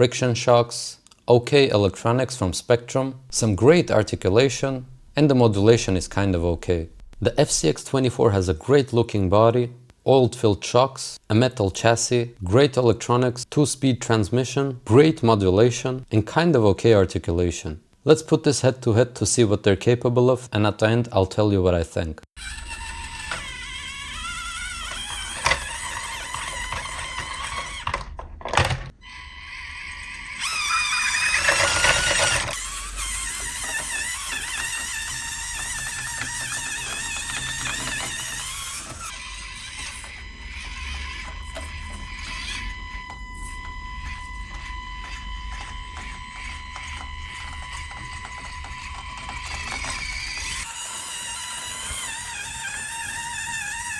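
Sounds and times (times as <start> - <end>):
electric motors whining: 3.3 - 7.8, 22.4 - 53.9.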